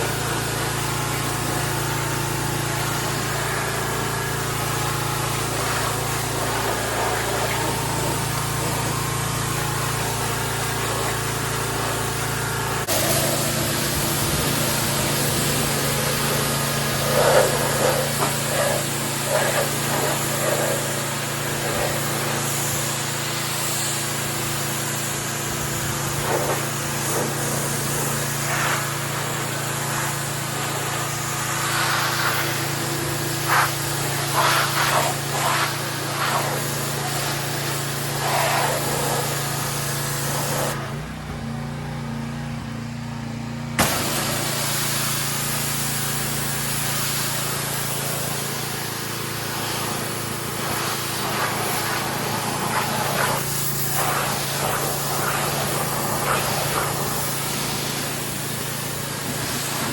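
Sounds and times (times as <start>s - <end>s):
water jet hissing against truck: 0.0s - 41.0s, 43.8s - 59.9s
pressure washer engine running: 0.0s - 59.9s.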